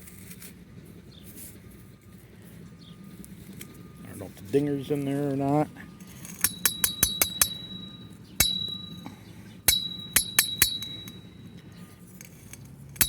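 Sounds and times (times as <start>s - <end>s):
small metal bell clinking: 6.2s - 11.7s.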